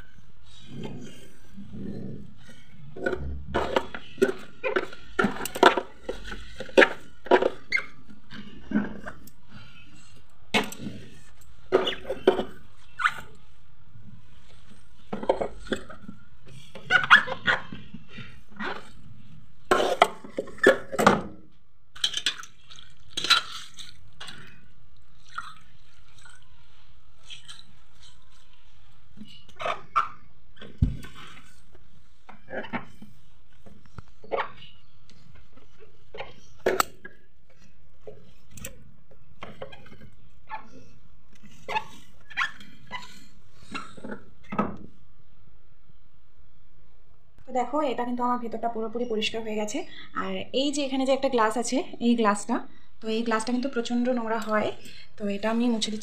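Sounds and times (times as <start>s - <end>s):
water dripping: 22.0s - 26.6s.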